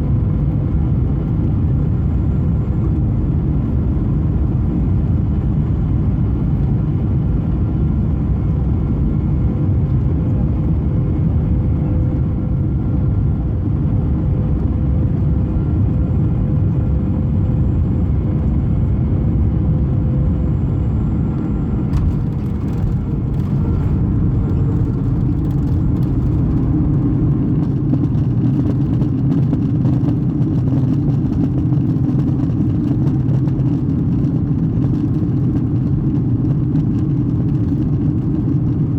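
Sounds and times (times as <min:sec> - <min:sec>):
aircraft cabin engine rumble: 0:00.0 - 0:38.9
faint hum: 0:01.2 - 0:29.0.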